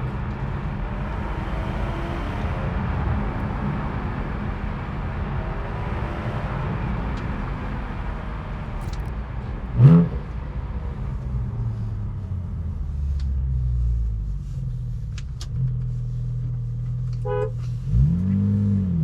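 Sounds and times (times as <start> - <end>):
car engine running: 0.0 - 19.0
road rumble: 0.0 - 19.0.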